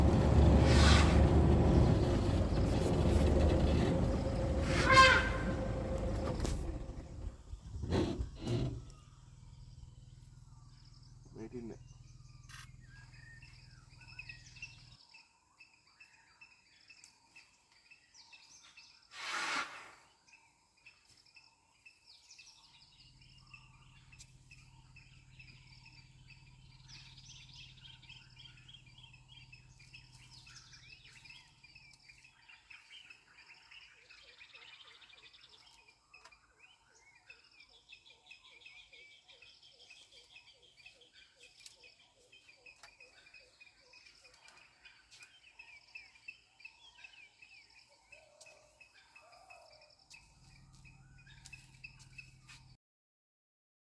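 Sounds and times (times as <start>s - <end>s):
birds chirping and calling: 36.2s - 52.6s.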